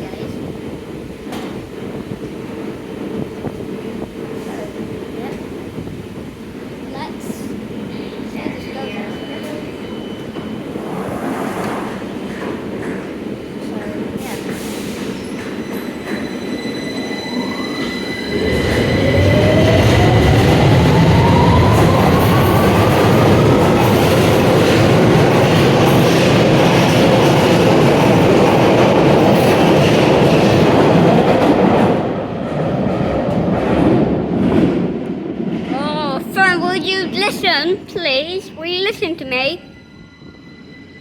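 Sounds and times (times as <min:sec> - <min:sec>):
train rumble: 0:00.0 - 0:41.0.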